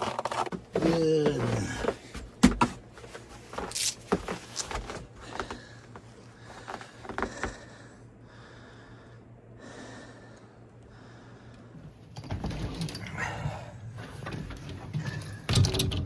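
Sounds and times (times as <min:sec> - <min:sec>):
man breathing hard: 0:05.2 - 0:11.9, 0:13.1 - 0:14.0.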